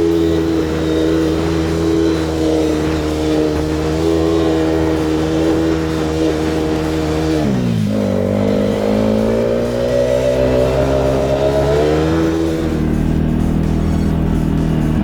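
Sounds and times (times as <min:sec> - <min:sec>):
atv engine running: 0:00.0 - 0:15.0.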